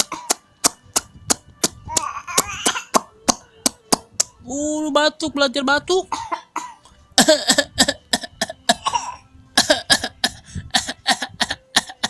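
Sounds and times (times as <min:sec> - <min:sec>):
child coughing: 0:00.1 - 0:00.4, 0:02.3 - 0:03.1, 0:06.1 - 0:12.0.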